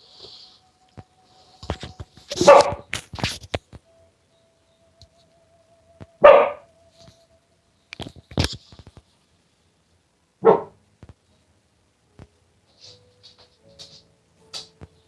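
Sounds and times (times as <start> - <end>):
dog barking: 2.4 - 2.8, 6.2 - 6.7, 10.4 - 10.8.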